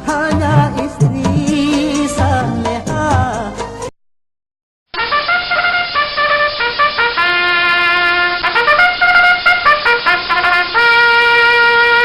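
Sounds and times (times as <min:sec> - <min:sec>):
solo brass melody: 0:04.9 - 0:12.0.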